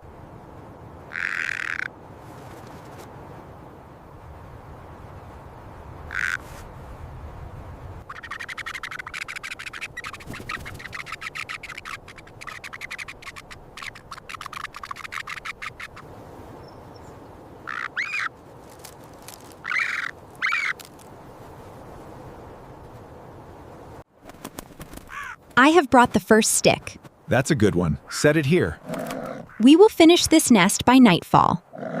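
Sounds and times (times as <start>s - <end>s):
ravens calling: 1.0s - 2.0s, 6.0s - 6.6s, 8.0s - 16.1s, 17.0s - 21.1s, 25.0s - 25.6s, 27.3s - 30.6s, 31.6s - 32.0s.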